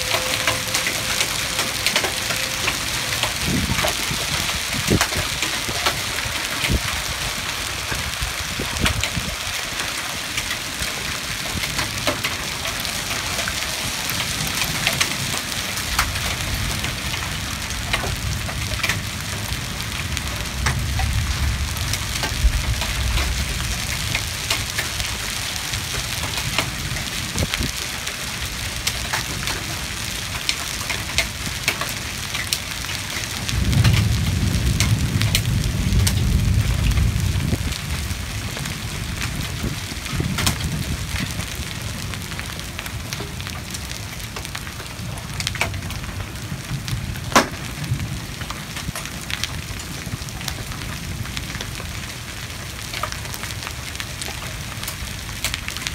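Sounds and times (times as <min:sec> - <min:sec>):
heavy rain pouring: 0:00.0 - 0:55.9
raindrops tapping hard surfaces: 0:00.0 - 0:55.9
thunder rumbling: 0:00.0 - 0:55.9.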